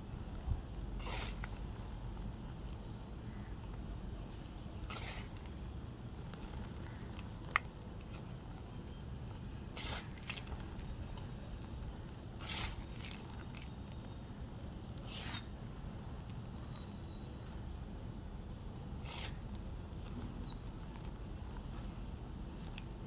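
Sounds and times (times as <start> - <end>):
low background hum: 0.0 - 23.0
chalk crunching: 9.3 - 11.4, 12.0 - 14.2, 15.0 - 15.5, 18.8 - 20.2.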